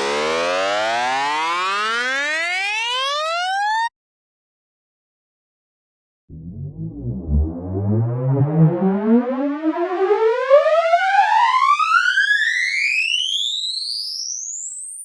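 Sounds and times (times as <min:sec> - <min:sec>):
synth riser rising tone: 0:00.0 - 0:03.9, 0:06.3 - 0:12.9.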